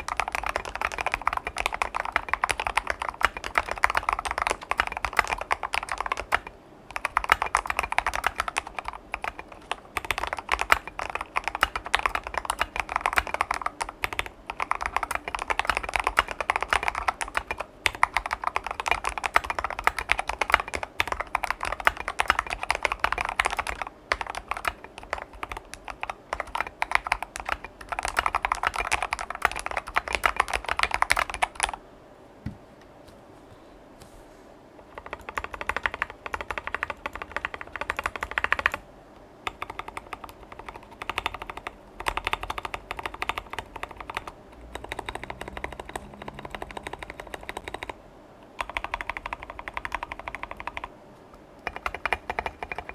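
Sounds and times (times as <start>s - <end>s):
mechanical keyboard typing: 0.0s - 31.8s, 34.8s - 38.8s, 39.4s - 50.9s, 51.6s - 52.9s.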